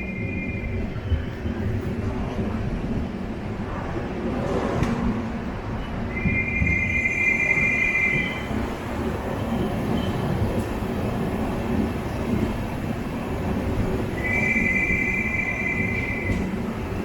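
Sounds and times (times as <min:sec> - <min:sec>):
train wheels rumbling on track: 0:00.0 - 0:17.0.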